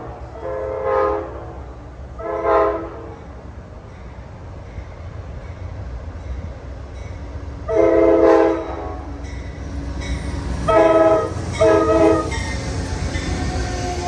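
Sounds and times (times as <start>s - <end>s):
locomotive air horn chord: 0.0s - 1.6s, 2.2s - 3.2s, 7.7s - 9.2s, 10.6s - 12.5s, 13.2s - 14.0s
train rumbling past: 0.0s - 14.0s.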